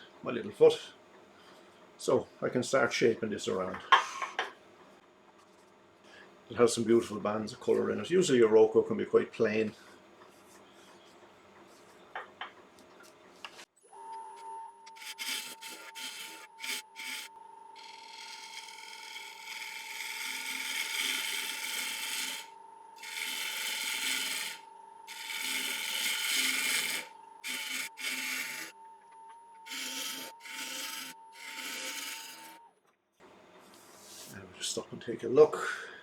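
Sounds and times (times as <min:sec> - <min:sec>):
lathe whine: 0:13.9 - 0:32.7.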